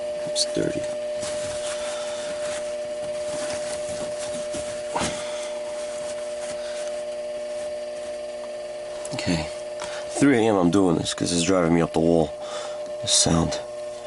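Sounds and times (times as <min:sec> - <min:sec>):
circulator pump droning hum: 0:00.0 - 0:14.0
rubbing handling noise: 0:00.5 - 0:09.0.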